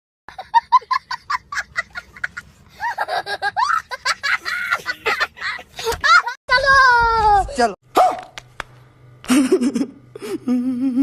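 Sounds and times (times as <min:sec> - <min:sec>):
person laughing: 0:00.3 - 0:06.4, 0:09.2 - 0:11.0.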